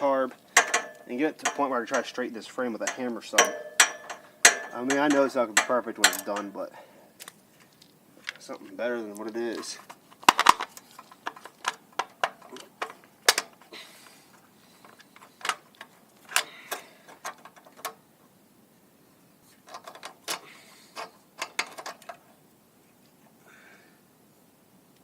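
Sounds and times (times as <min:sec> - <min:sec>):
hand tools clinking on metal: 0:00.0 - 0:06.8.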